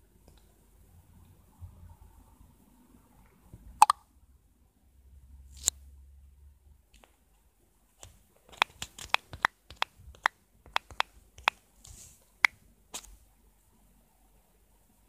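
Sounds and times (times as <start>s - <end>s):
sharp clicks: 8.5s - 11.6s.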